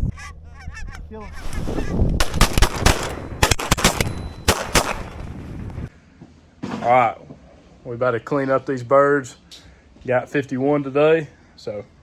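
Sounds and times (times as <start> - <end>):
geese honking: 0.0 - 2.0
volley of shotgun shots: 2.2 - 5.4.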